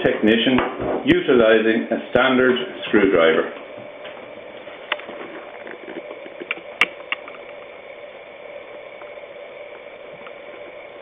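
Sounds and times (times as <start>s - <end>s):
electrical hum: 0.0s - 11.0s.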